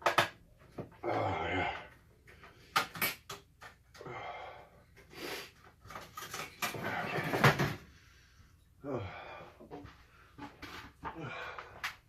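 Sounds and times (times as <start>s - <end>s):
man breathing hard and hissing: 4.0s - 5.6s.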